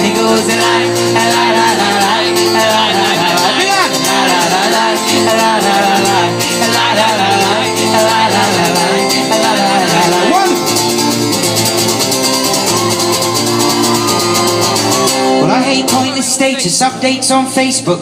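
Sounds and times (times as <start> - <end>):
audience singing along: 0.0 - 12.4
acoustic guitar strumming: 0.0 - 17.4.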